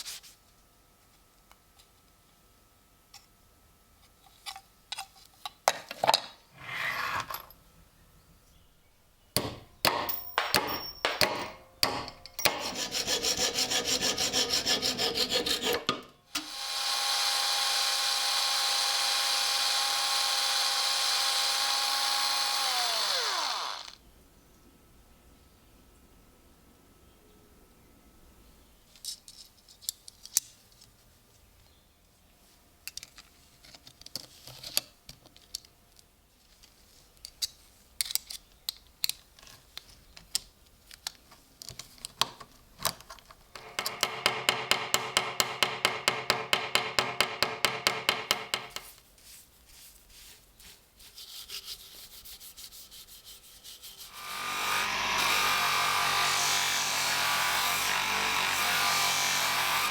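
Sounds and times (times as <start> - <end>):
rasping strokes: 12.4 - 16.0
power tool running: 16.3 - 24.0, 54.1 - 59.9.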